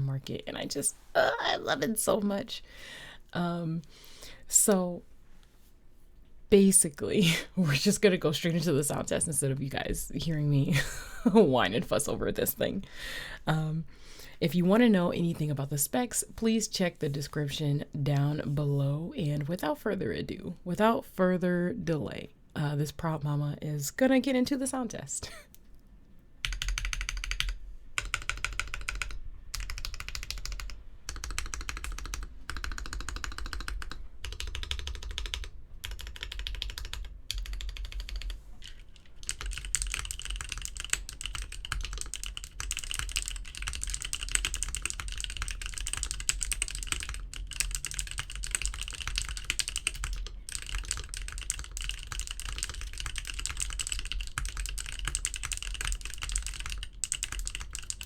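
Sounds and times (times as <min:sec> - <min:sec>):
typing on mechanical keyboard: 0:26.4 - 0:58.0.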